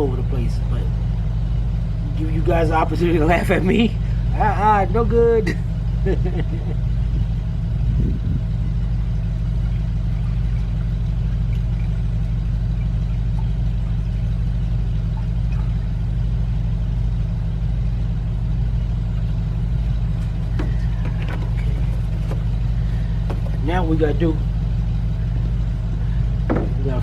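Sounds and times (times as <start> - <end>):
engine idling: 0.0 - 27.0.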